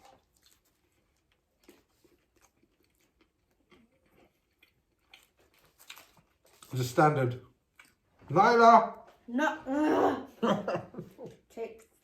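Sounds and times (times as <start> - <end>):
faint chewing with crunches: 0.0 - 8.3, 11.3 - 12.0.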